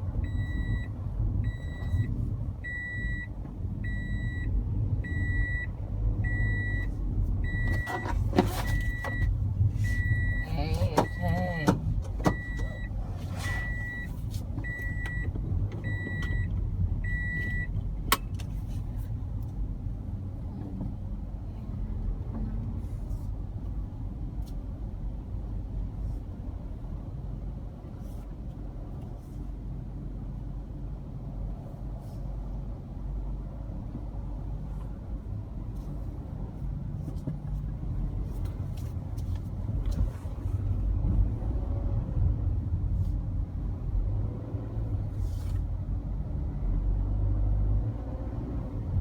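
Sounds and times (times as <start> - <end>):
car engine rumble in cabin: 0.0 - 49.0
dashboard warning chime: 0.2 - 17.7.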